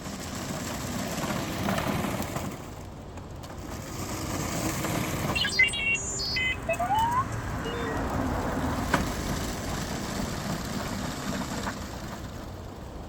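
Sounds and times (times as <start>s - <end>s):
robot beeps and whistles: 5.3s - 8.1s
low electronic tone: 5.4s - 8.1s.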